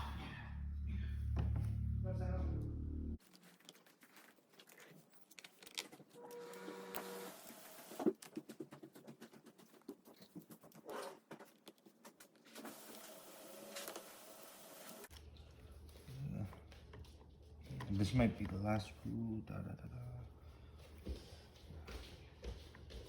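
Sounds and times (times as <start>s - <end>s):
motor whir: 6.2s - 8.0s.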